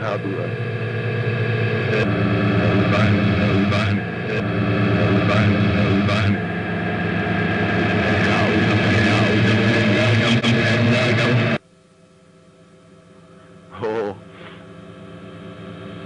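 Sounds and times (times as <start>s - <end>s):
steady hum: 0.0s - 16.0s
garbled backwards voice fragments: 1.8s - 6.6s, 7.9s - 11.6s.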